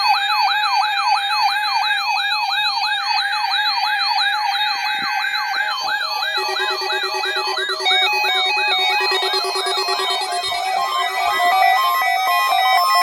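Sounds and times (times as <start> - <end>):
electronic siren alert tone yelping: 4.3 - 13.0
steady electronic tone: 5.7 - 12.4.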